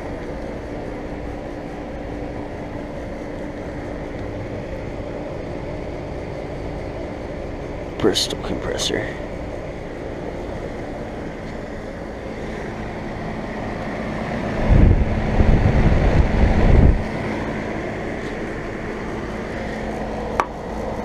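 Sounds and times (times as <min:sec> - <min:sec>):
air conditioner unit humming: 0:00.0 - 0:21.0
wind buffeting microphone: 0:14.6 - 0:17.2.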